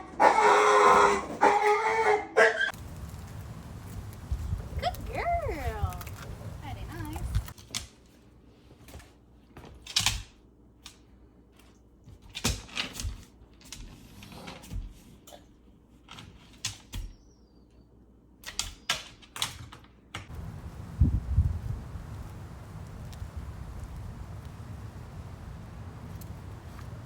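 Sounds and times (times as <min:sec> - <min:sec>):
steady rushing noise: 0:20.3 - 0:27.0.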